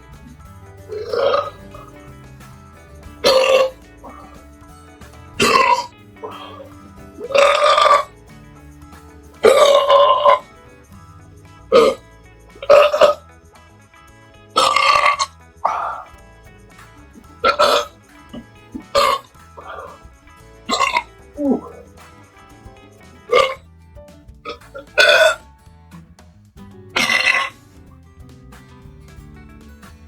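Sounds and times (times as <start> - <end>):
quiet background music: 0.0 - 30.0
person belching loudly: 0.9 - 2.0, 3.2 - 4.5, 5.4 - 8.1, 9.4 - 10.5, 11.7 - 12.0, 12.6 - 13.2, 14.6 - 16.2, 17.2 - 20.0, 20.7 - 21.9, 23.3 - 23.6, 24.5 - 25.4, 27.0 - 27.6.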